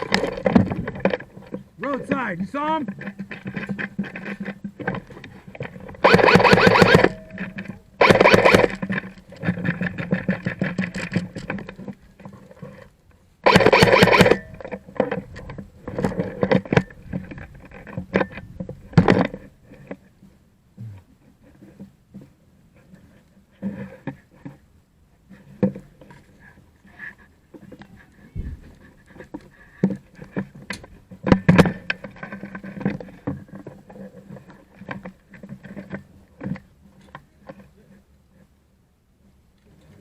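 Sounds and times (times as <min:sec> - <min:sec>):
airsoft guns firing full-auto: 0:06.0 - 0:07.2, 0:08.0 - 0:08.8, 0:13.4 - 0:14.4
airsoft single shots and clicks: 0:06.0 - 0:07.2, 0:08.0 - 0:08.8, 0:13.4 - 0:14.4.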